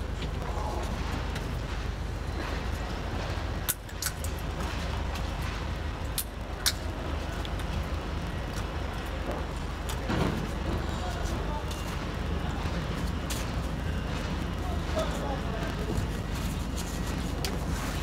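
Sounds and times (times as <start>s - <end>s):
low street rumble: 0.0s - 18.0s.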